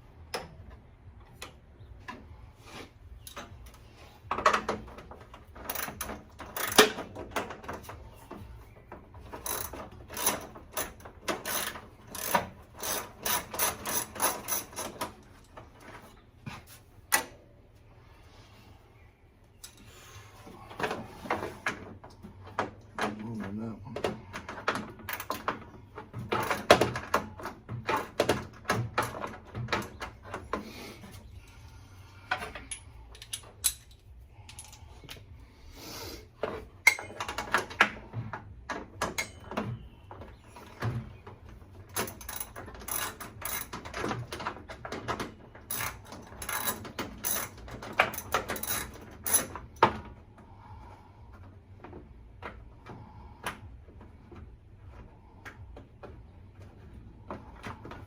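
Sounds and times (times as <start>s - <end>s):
ratchet wrench clicking: 9.4s - 15.0s.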